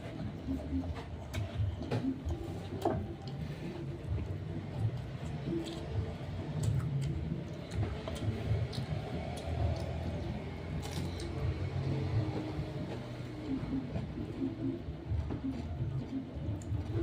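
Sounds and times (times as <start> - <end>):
chewing and food handling clicks: 4.8 - 11.4.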